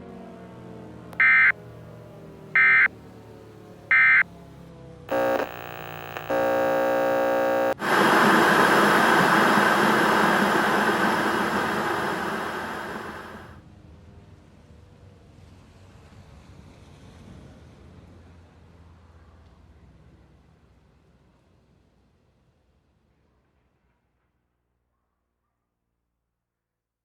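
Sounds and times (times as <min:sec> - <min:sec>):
harsh buzzing tone: 0:01.2 - 0:01.5, 0:02.6 - 0:02.9, 0:03.9 - 0:04.2, 0:05.1 - 0:13.6
static hiss: 0:01.2 - 0:01.5, 0:02.6 - 0:02.9, 0:03.9 - 0:04.2, 0:05.1 - 0:13.6.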